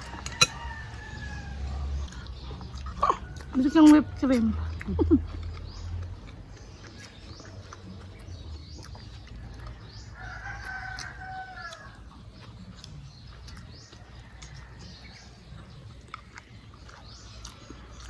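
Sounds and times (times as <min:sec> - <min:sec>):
rooster crowing: 0:00.0 - 0:02.0, 0:10.0 - 0:12.0
small birds chirping: 0:00.0 - 0:18.0.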